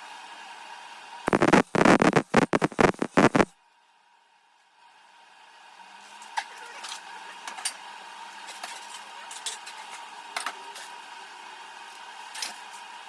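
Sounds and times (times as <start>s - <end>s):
steady machine hum: 1.3s - 3.5s.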